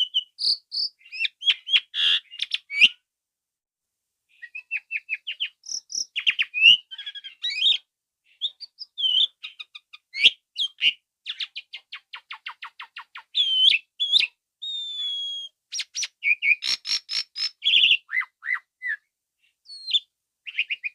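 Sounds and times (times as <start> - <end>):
starling singing: 4.4 - 7.8, 8.4 - 19.1, 19.7 - 20.9.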